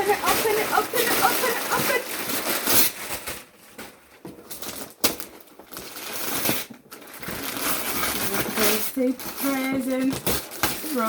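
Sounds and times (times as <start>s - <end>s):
wrapping paper rustling and tearing: 0.0s - 11.0s.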